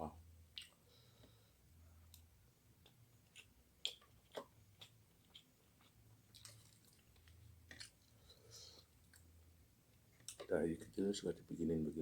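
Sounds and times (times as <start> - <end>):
chewing with wet mouth clicks: 0.5 - 0.8, 2.0 - 8.2, 9.0 - 9.3.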